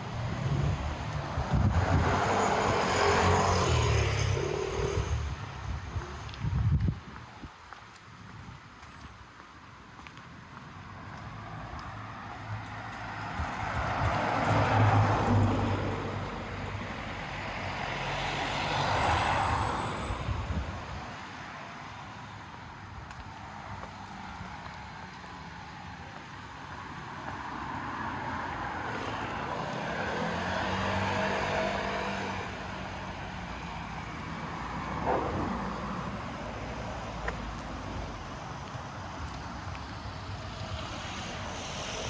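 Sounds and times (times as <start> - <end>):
steady urban hum: 0.0 - 42.0
car engine passing: 0.3 - 5.4, 13.1 - 20.3, 28.0 - 33.4, 34.0 - 38.3
car tyre rush: 33.8 - 42.0.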